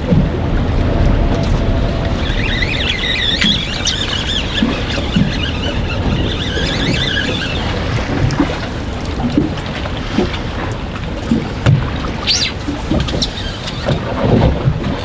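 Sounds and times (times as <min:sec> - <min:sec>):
steady rumble: 0:00.0 - 0:14.1
strong wind buffeting boat: 0:00.0 - 0:15.0
high wavering squeal: 0:00.4 - 0:09.1.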